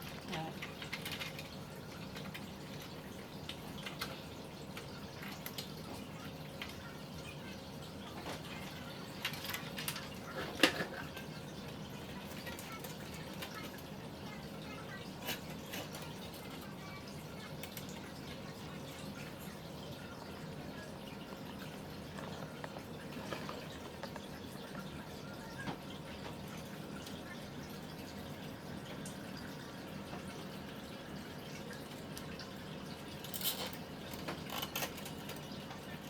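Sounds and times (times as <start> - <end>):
computer parts clicking and tapping: 0.0 - 2.9.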